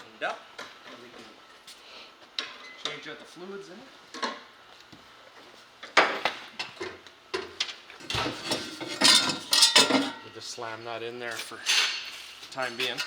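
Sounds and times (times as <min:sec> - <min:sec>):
metal parts clanking: 0:08.0 - 0:10.3
metal parts clattering: 0:08.0 - 0:10.3.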